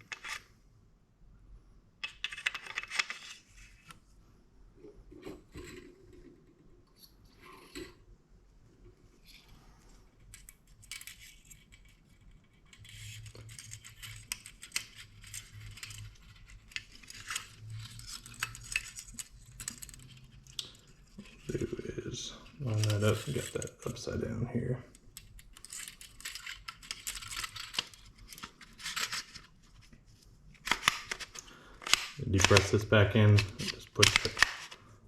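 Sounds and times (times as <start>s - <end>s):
metal gun parts clicking and scraping: 0.0s - 0.5s, 2.0s - 3.4s, 10.2s - 21.5s, 25.1s - 29.5s, 30.6s - 34.8s.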